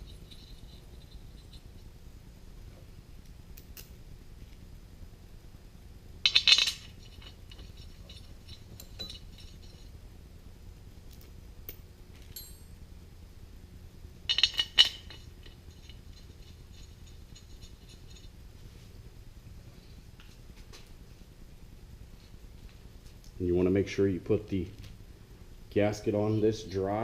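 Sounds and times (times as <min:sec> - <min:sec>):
steel bolts clinking: 0:06.2 - 0:09.9, 0:14.3 - 0:18.4.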